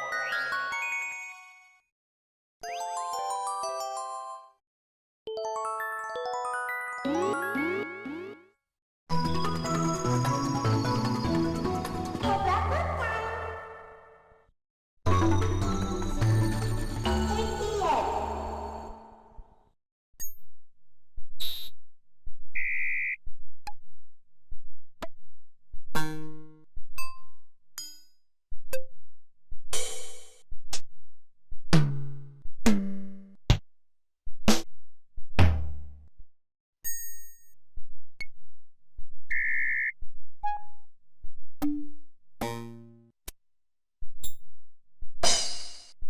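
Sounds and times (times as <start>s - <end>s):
synthesized phone sound effects: 7.0s - 8.5s.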